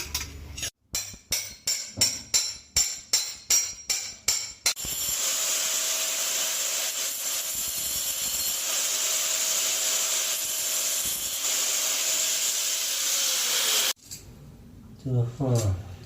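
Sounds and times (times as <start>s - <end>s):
power tool grinding: 4.7s - 14.0s.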